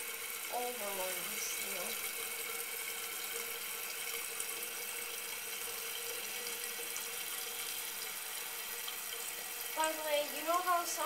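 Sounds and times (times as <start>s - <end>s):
water hissing into toilet tank: 0.0s - 11.0s.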